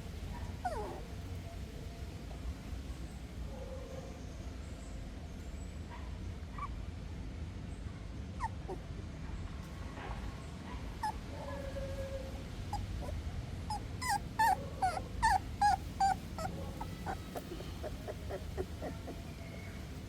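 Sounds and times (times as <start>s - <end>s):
puppies whimpering: 0.6s - 1.1s, 11.0s - 11.2s, 12.7s - 20.0s.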